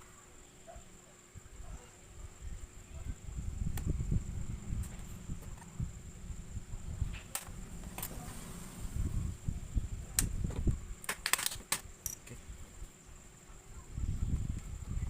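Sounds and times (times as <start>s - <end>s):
handling rumble: 2.6s - 12.8s.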